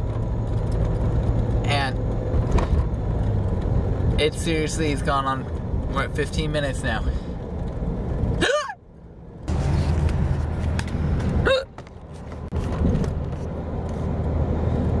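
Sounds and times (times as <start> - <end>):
low car cabin drone: 0.0 - 15.0
man hiccuping: 8.4 - 8.8, 11.4 - 11.8.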